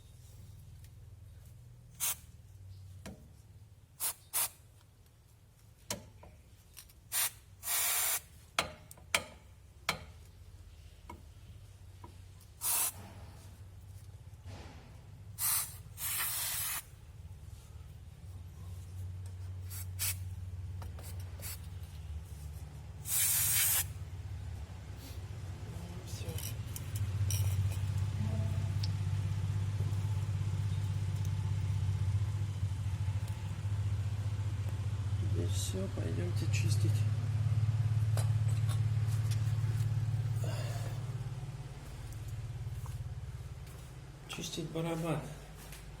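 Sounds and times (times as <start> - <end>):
aerosol spray hissing: 7.1 - 8.2, 12.6 - 13.0, 15.4 - 16.9, 23.0 - 23.9.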